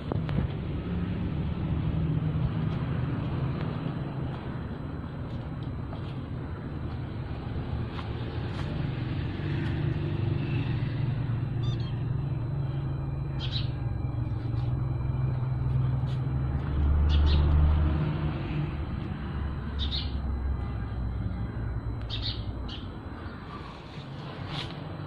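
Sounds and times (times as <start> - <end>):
motor vehicle rumbling: 0.0 - 25.0
bird chirps: 11.6 - 12.0, 13.3 - 13.8, 19.7 - 20.4, 22.0 - 23.7.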